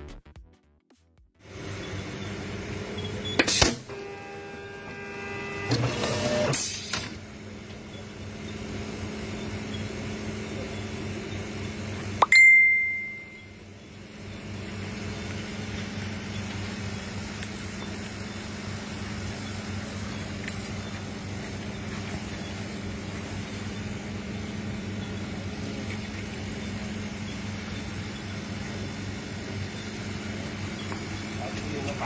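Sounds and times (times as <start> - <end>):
sewing machine electrical hum: 1.4 - 32.0
short high beep: 12.2 - 13.6.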